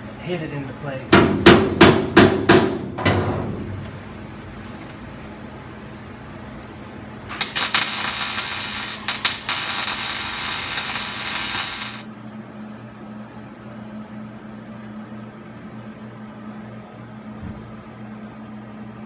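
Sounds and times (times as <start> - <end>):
welding arc crackling: 7.3 - 12.1.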